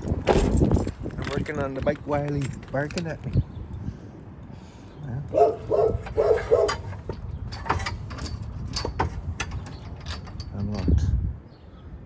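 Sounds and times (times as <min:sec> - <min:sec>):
dog barking: 0:05.3 - 0:06.9
sharp clicks and knocks: 0:05.7 - 0:11.0.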